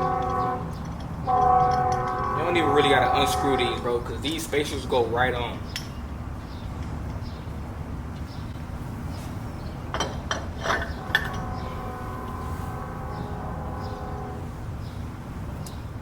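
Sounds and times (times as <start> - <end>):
metal clinks and knocks: 0.0 - 3.4, 9.9 - 11.6
ringing metallic tone: 0.0 - 4.1, 10.6 - 14.6.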